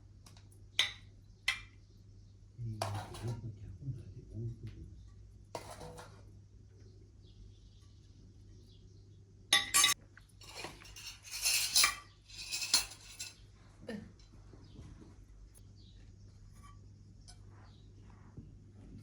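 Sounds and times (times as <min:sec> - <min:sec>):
cutlery clinking on plates: 0:02.8 - 0:03.4, 0:05.6 - 0:06.2, 0:09.6 - 0:13.4
cutlery scraping on plates: 0:02.8 - 0:03.4, 0:05.6 - 0:06.2, 0:09.6 - 0:13.4.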